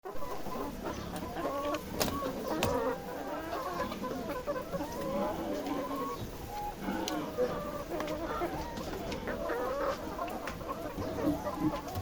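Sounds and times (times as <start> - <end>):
hens clucking: 0.0 - 12.0.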